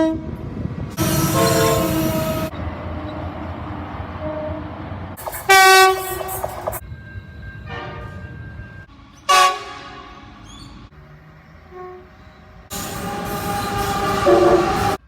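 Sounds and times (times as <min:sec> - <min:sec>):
train horn blasts: 0:01.0 - 0:02.5, 0:05.4 - 0:06.5, 0:09.3 - 0:10.2, 0:11.7 - 0:15.0.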